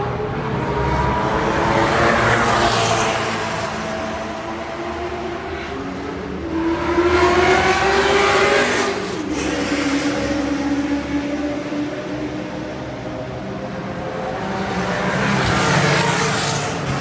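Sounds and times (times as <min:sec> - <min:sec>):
race car engine accelerating: 0:14.2 - 0:17.0.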